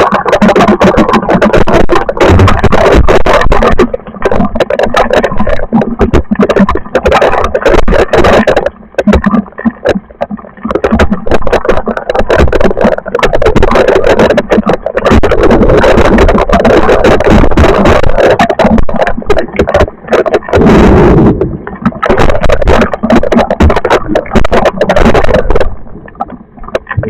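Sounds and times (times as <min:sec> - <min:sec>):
rushing noise: 0:12.2 - 0:27.0.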